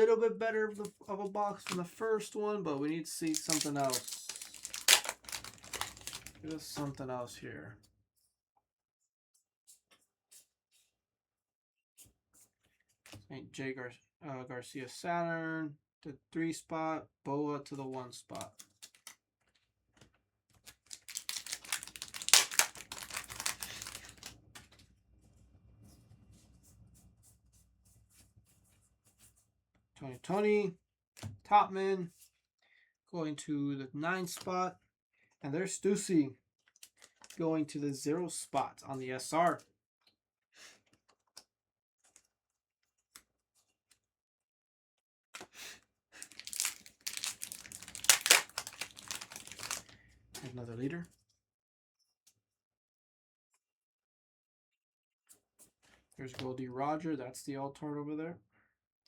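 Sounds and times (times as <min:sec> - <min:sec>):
foil wrapper tearing and crinkling: 0:01.5 - 0:01.9, 0:03.2 - 0:06.8, 0:20.6 - 0:24.3, 0:46.2 - 0:49.9.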